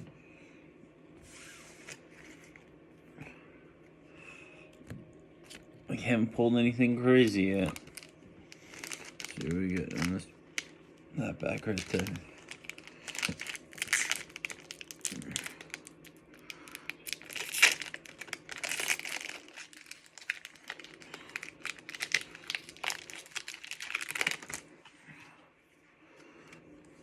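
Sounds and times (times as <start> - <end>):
foil wrapper crinkling and tearing: 7.2 - 24.7.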